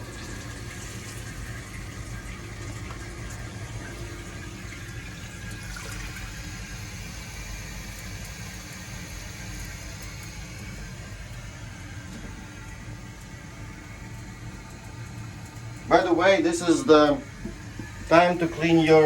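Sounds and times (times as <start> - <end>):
toilet tank refilling: 0.0 - 19.0.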